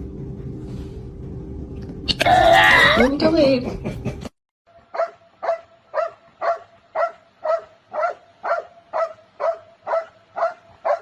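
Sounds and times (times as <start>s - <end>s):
dog barking: 4.9s - 11.0s.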